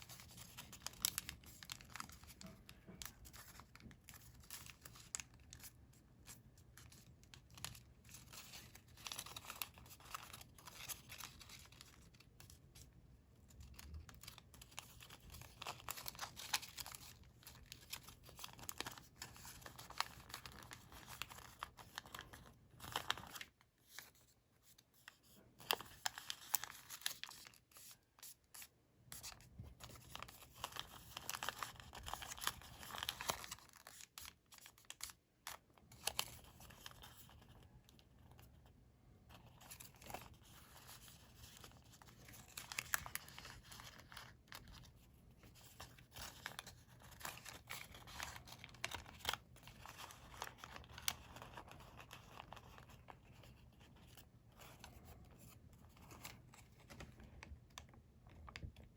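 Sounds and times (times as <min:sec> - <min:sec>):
paper rustling and creasing: 0:00.0 - 0:58.9.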